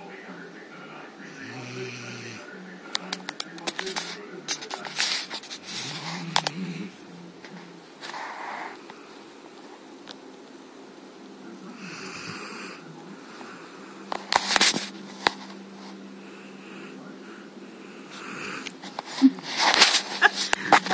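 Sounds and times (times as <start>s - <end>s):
faint steady hum: 0.0s - 20.9s
slow snoring: 1.2s - 2.6s, 5.6s - 7.2s, 11.7s - 14.1s, 16.2s - 19.8s.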